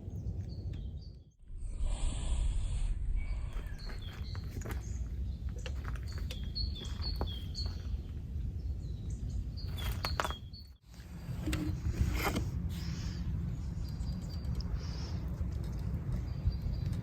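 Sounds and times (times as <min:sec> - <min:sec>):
steady low rumble: 0:00.0 - 0:09.7
bird chirping: 0:00.0 - 0:10.8.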